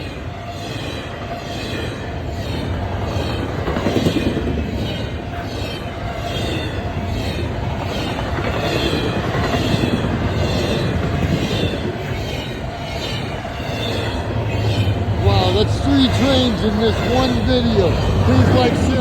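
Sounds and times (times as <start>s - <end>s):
freight train rumbling past: 0.0s - 19.0s
wheels beating on rail joints: 0.7s - 17.2s.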